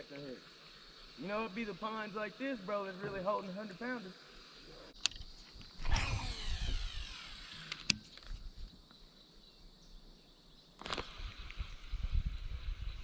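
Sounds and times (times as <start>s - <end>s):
fishing reel spool whirring: 5.8s - 8.0s
sharp click: 7.4s - 8.3s.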